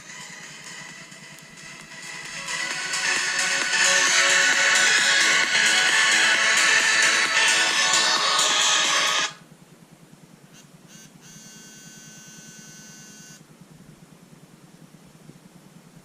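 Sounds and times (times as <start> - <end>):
music from phone speaker: 0.0 - 9.4
phone vibration buzzing: 10.6 - 13.4.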